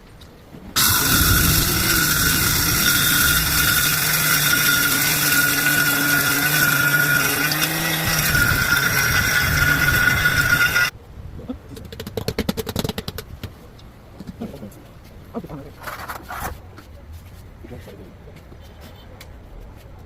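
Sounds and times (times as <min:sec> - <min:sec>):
spice grinder motor whine: 0:00.8 - 0:10.9.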